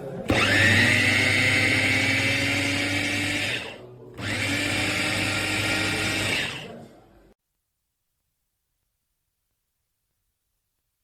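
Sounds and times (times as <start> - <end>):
food chopper motor whining: 0.3 - 6.8.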